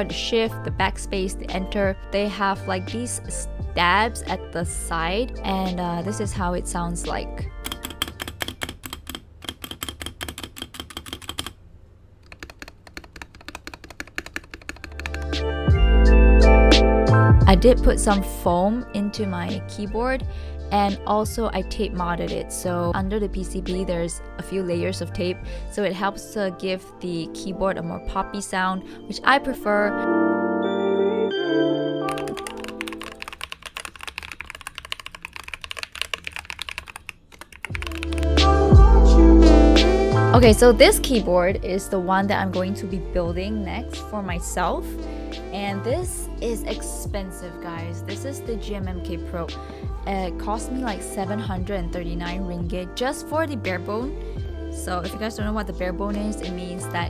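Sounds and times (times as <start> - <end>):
music: 0.0 - 8.5, 14.9 - 33.4, 37.7 - 57.0
fast typing on mechanical keyboard: 7.6 - 11.6, 12.2 - 15.4, 32.1 - 38.4
mechanical keyboard key clicks: 7.6 - 11.6.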